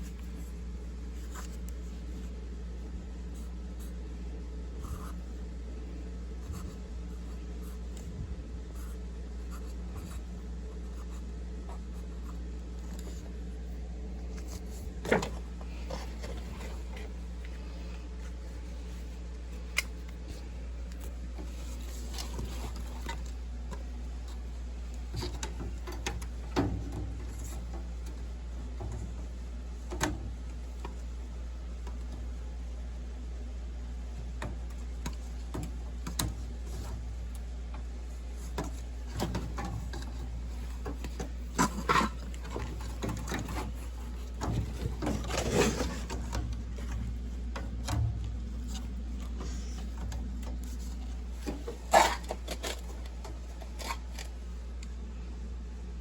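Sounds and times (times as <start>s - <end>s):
equipment humming: 0.0s - 56.0s.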